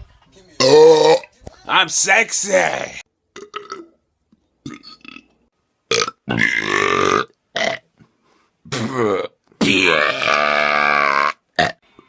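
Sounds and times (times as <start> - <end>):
person burping: 0.6 - 1.3, 3.4 - 4.0, 4.6 - 5.3, 5.9 - 7.8, 8.7 - 11.8.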